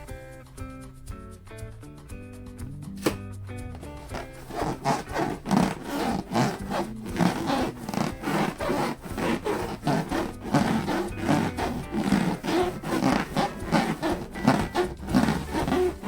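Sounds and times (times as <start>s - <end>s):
balloons squeaking when rubbed: 4.1s - 16.0s.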